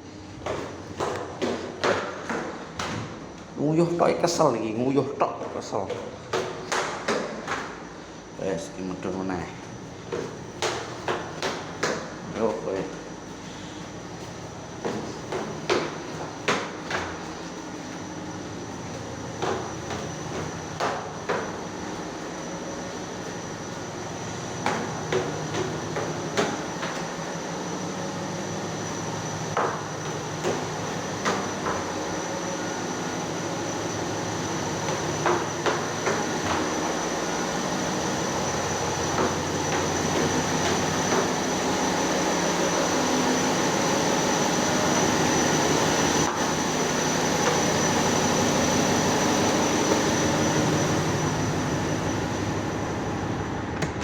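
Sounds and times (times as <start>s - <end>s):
ship machinery whine: 12.1s - 54.0s.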